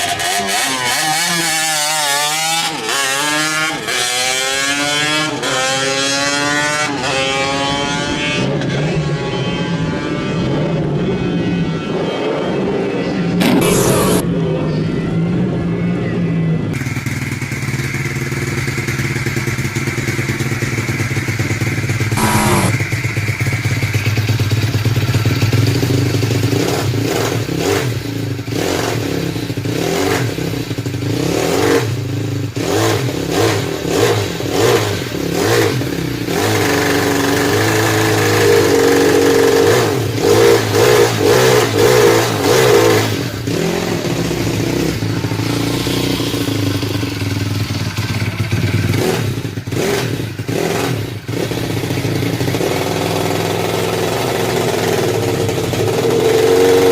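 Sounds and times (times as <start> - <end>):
small motorbike engine revving: 13.4 - 14.3, 22.1 - 23.0, 28.5 - 56.9
high whine: 13.4 - 14.4, 22.2 - 22.9.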